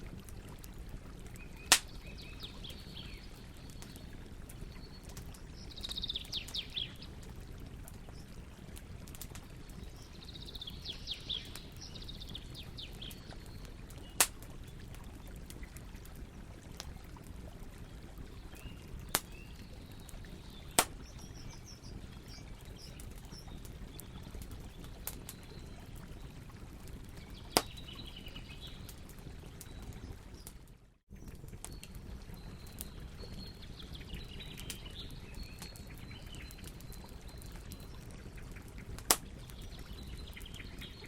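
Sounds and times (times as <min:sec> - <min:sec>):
campfire crackling: 0:00.0 - 0:41.0
burning wood popping: 0:00.1 - 0:17.2, 0:17.9 - 0:26.6, 0:27.2 - 0:30.5, 0:34.5 - 0:40.7
birds chirping: 0:01.4 - 0:07.2, 0:09.5 - 0:14.7, 0:18.4 - 0:26.3, 0:27.2 - 0:30.5.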